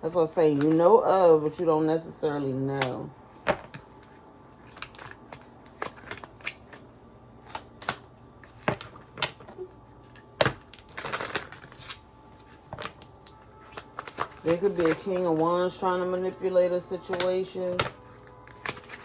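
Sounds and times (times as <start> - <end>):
cards shuffling: 2.8 - 9.4, 10.1 - 16.2, 17.0 - 19.0.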